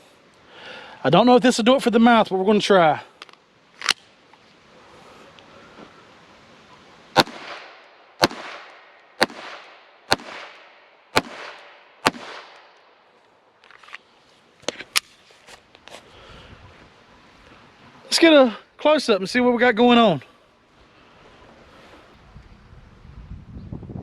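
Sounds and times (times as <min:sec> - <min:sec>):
pistol shots with echo: 0:07.2 - 0:12.7.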